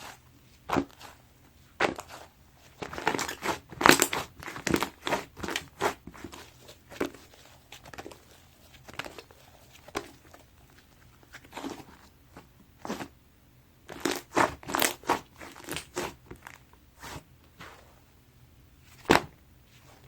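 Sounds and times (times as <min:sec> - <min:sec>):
slime squished by hand: 0:01.8 - 0:11.9, 0:13.9 - 0:17.9.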